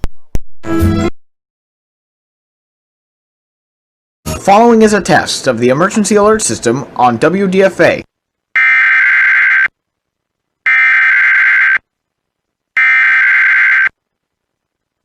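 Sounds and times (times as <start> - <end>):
buzzing digital data tones: 10.7 - 11.8, 12.8 - 14.0.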